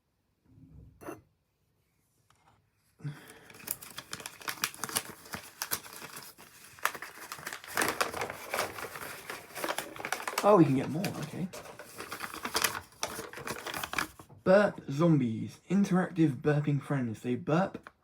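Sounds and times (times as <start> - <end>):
paper crinkling and rustling: 3.1 - 14.3.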